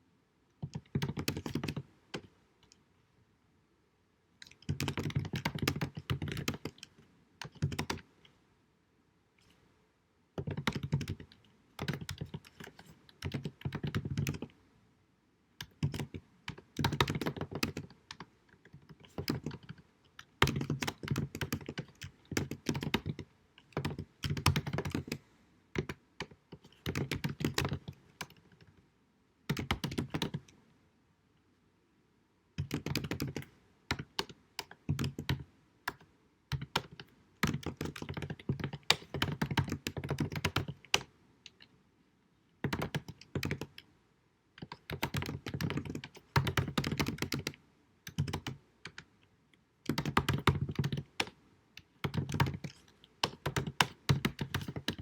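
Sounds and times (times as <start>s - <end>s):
rapid keyboard key clicks: 0.6s - 2.3s, 4.4s - 8.0s, 10.4s - 14.5s, 15.6s - 25.2s, 25.8s - 28.7s, 29.5s - 30.4s, 32.6s - 41.6s, 42.6s - 43.8s, 44.6s - 49.1s, 49.9s - 55.0s.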